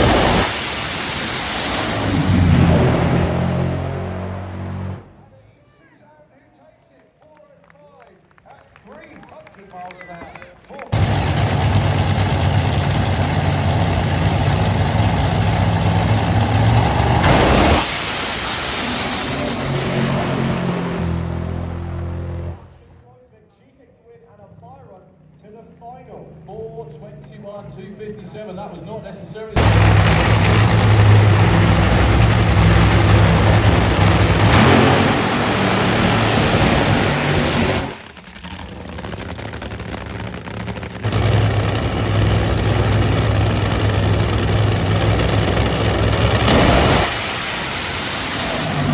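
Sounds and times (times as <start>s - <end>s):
racing car engine running: 0.0s - 5.2s, 10.8s - 23.0s, 29.6s - 48.9s.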